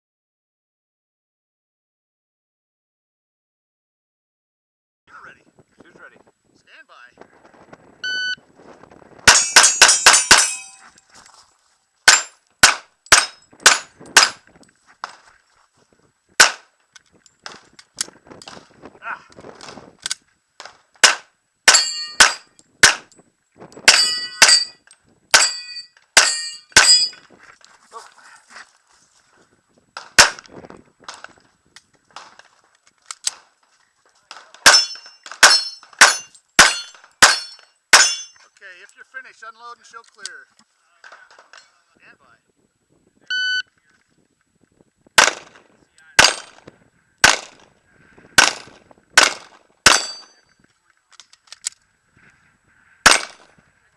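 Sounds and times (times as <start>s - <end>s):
pistol shots: 12.1s - 14.4s, 16.4s - 16.7s, 20.6s - 23.1s, 30.0s - 30.5s, 34.3s - 38.3s, 45.2s - 45.6s, 46.2s - 46.6s, 47.2s - 47.7s, 48.4s - 50.4s, 53.1s - 53.5s.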